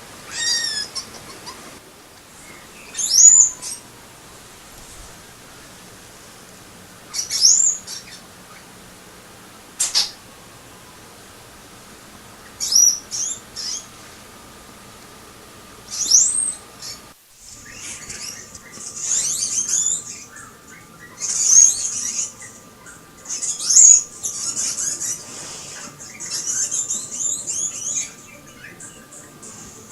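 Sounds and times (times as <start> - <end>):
small pets chirping squeaks: 0.3 - 1.6.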